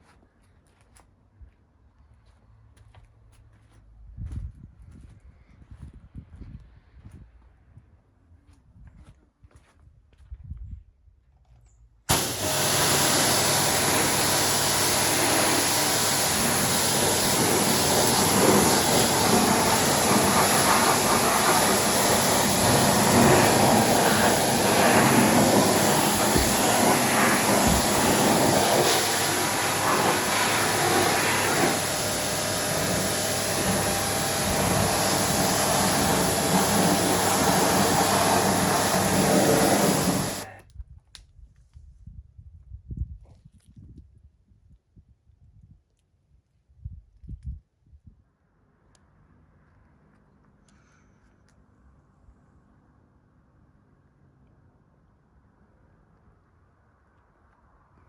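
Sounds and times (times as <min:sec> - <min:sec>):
washing machine running: 0:12.1 - 0:40.4.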